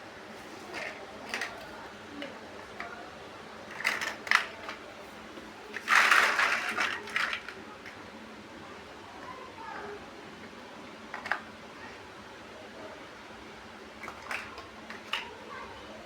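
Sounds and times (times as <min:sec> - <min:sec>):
clatter of plastic pieces: 0:00.4 - 0:03.0, 0:03.7 - 0:04.9, 0:05.7 - 0:08.0, 0:11.1 - 0:11.5, 0:14.0 - 0:15.4
plastic bricks clicking: 0:03.7 - 0:04.8, 0:05.7 - 0:07.6, 0:14.0 - 0:15.3.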